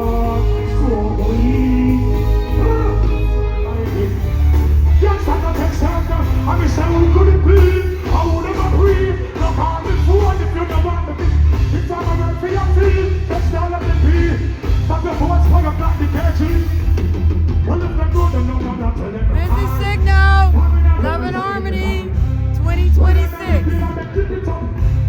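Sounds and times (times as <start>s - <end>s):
loud reggae music: 0.0s - 25.0s
heavy bass line: 19.3s - 24.0s
person singing: 19.4s - 23.9s.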